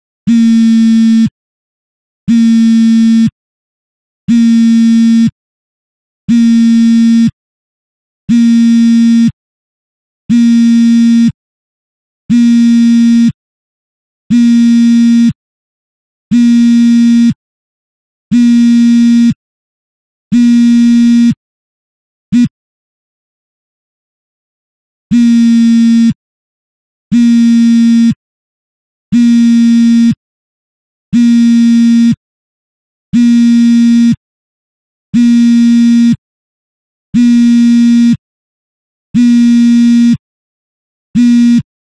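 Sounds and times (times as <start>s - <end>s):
phone vibrating on fabric: 0.3s - 1.3s, 2.3s - 3.4s, 4.3s - 5.4s, 6.3s - 7.4s, 8.3s - 9.4s, 10.3s - 11.3s, 12.3s - 13.4s, 14.3s - 15.4s, 16.3s - 17.4s, 18.3s - 19.4s, 20.3s - 21.4s, 22.3s - 22.5s, 25.1s - 26.2s, 27.1s - 28.2s, 29.1s - 30.2s, 31.1s - 32.2s, 33.1s - 34.2s, 35.2s - 36.2s, 37.2s - 38.2s, 39.2s - 40.2s, 41.2s - 41.7s.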